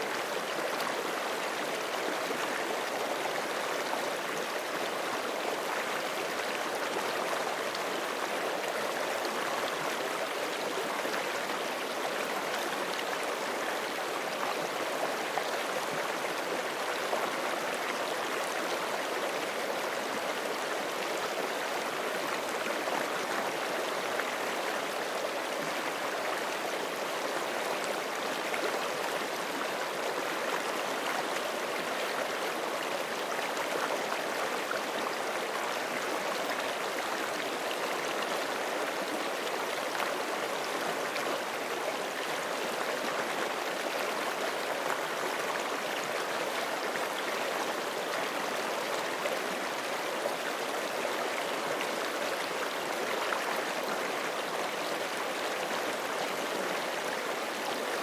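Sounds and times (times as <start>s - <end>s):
creek flowing over rocks: 0.0s - 58.0s.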